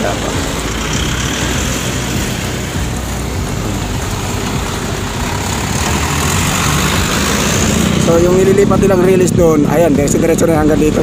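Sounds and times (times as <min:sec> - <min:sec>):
vehicle engines running: 0:00.0 - 0:11.0.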